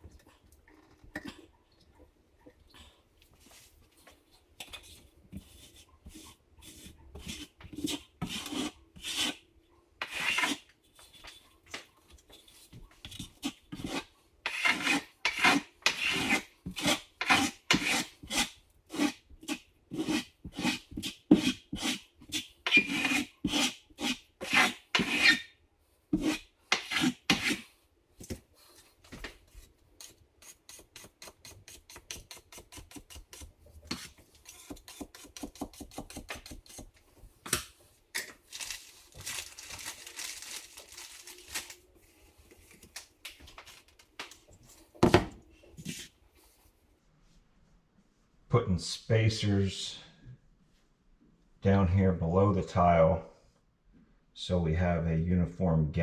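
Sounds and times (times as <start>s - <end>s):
hand tool rasping scrape: 5.6s - 9.4s, 10.0s - 11.4s, 13.2s - 25.5s, 26.2s - 27.6s, 30.0s - 36.9s.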